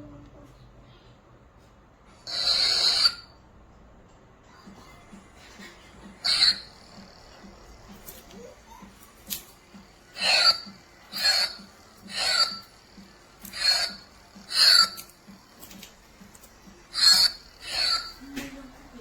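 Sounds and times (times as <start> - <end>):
toy lightsaber sound effects: 2.3 - 3.3, 6.2 - 18.7.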